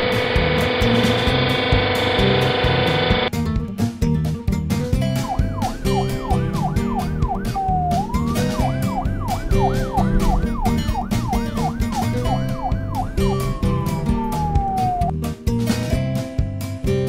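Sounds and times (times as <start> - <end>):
cheerful background music: 3.3 - 17.0
emergency siren yelping: 5.0 - 15.2.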